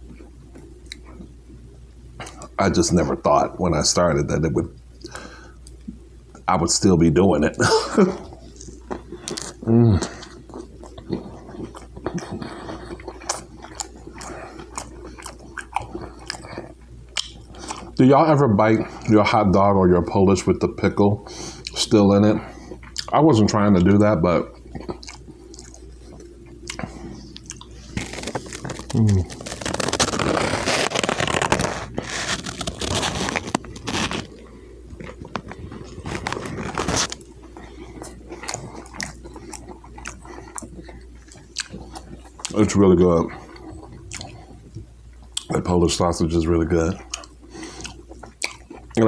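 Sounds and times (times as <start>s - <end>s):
food crunching while eating: 7.6s - 18.0s, 21.5s - 45.8s, 46.9s - 49.0s
close-up chewing: 8.0s - 18.0s, 21.2s - 45.5s, 46.9s - 49.0s.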